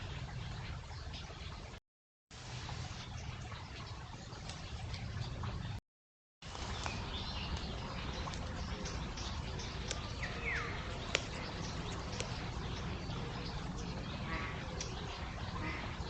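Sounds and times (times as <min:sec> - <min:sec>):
birds chirping and calling: 0:06.5 - 0:16.0
steady low rumble: 0:06.5 - 0:16.0.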